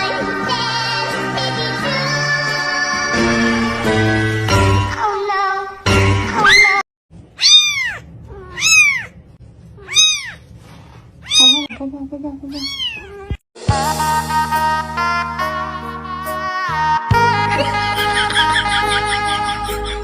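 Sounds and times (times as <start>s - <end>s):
cat meowing: 6.4s - 6.8s, 7.4s - 9.2s, 9.8s - 10.4s, 11.2s - 11.8s, 12.5s - 13.4s.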